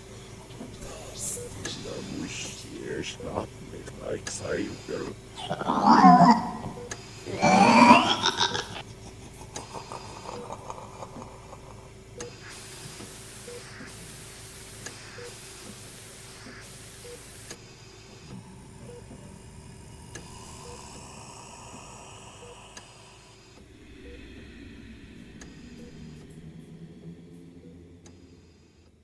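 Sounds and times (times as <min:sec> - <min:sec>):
electrical hum: 0:00.0 - 0:29.0
loud hissing noise: 0:00.8 - 0:28.9
drone drifting in pitch: 0:05.4 - 0:08.8, 0:23.6 - 0:29.0.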